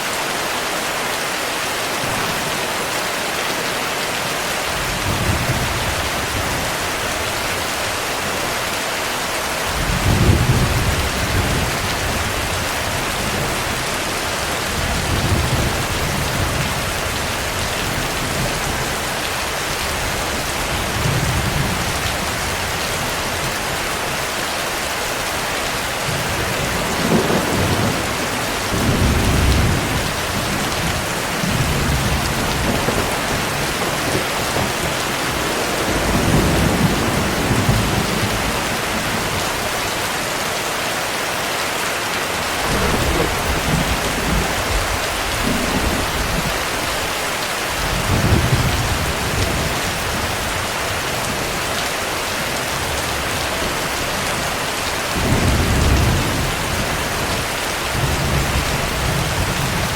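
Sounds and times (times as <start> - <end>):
heavy rain hissing: 0.0 - 59.9
thunder rolling: 26.0 - 39.5, 42.4 - 47.2.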